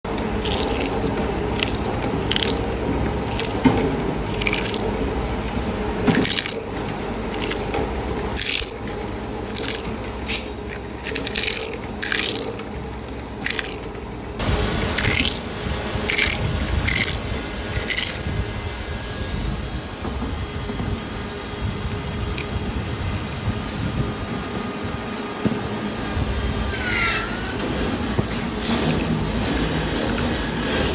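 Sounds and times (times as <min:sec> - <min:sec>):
electric grinder whine: 0:00.1 - 0:30.9
grinding on rubber: 0:00.4 - 0:18.3
rasping strokes: 0:00.4 - 0:18.4.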